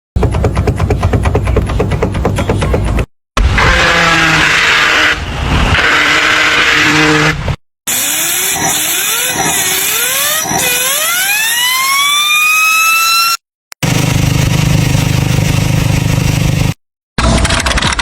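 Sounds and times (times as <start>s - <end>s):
engine whine rising in pitch: 3.6s - 16.8s.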